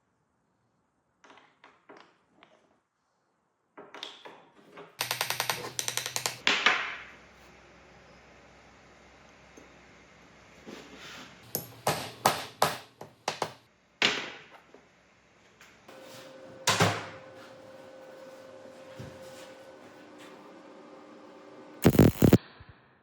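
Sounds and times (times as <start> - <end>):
machine hum: 21.8 - 22.4.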